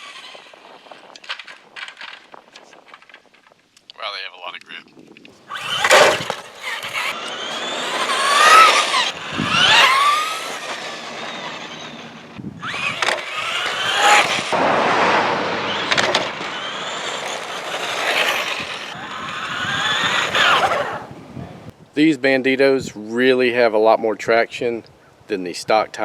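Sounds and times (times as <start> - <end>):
tires rolling on pavement: 5.4 - 21.7
electric motor whining: 5.5 - 14.6, 15.5 - 21.4.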